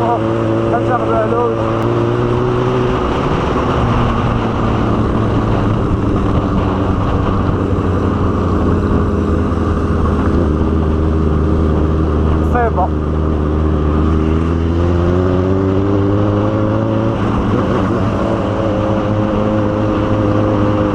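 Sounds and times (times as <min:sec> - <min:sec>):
motorcycle engine running: 0:00.0 - 0:20.9
wind and road noise: 0:00.0 - 0:20.9.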